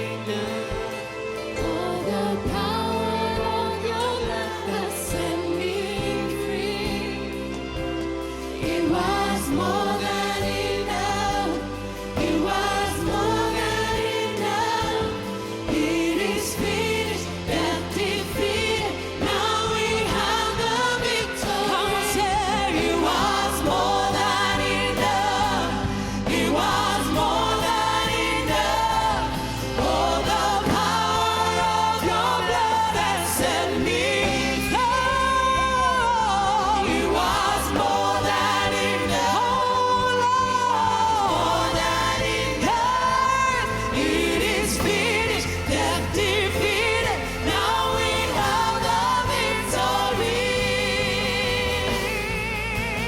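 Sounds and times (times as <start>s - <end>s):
bass: 0.0s - 53.0s
choir singing: 0.0s - 53.0s
drums: 0.0s - 53.0s.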